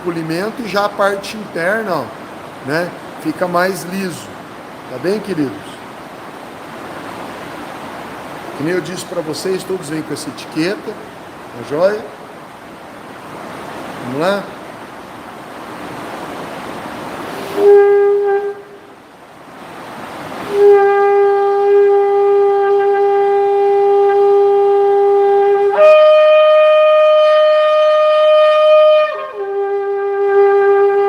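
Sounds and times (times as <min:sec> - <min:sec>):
shofar blasts: 0:17.4 - 0:18.9, 0:20.4 - 0:31.0.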